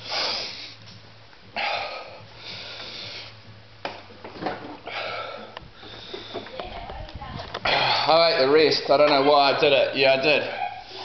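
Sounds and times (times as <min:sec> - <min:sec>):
man breathing hard and sniffing: 0:00.0 - 0:03.5, 0:04.8 - 0:06.5, 0:07.6 - 0:08.4.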